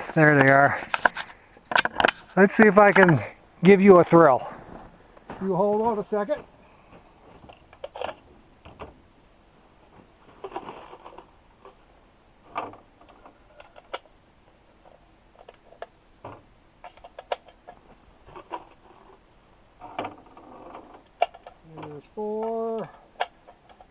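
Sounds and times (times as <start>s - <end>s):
handling clicks and knocks: 0.0s - 3.2s, 14.8s - 19.0s, 19.8s - 23.9s.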